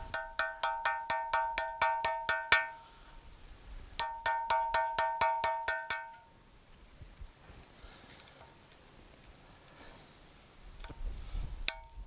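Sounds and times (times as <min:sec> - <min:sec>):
hammer tapping steel tool: 0:00.0 - 0:02.8, 0:04.0 - 0:06.2, 0:11.7 - 0:12.0.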